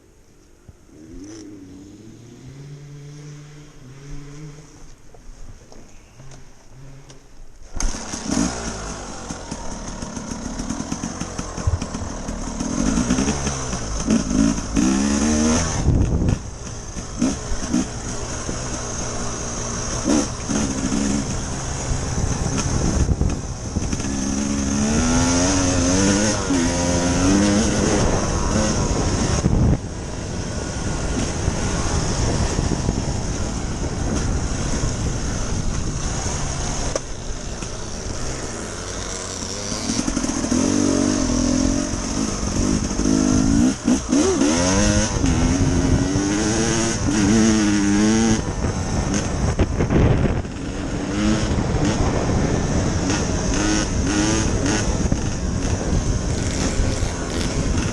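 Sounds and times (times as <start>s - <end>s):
dirt bike engine revving: 0.9s - 4.9s, 7.7s - 57.9s.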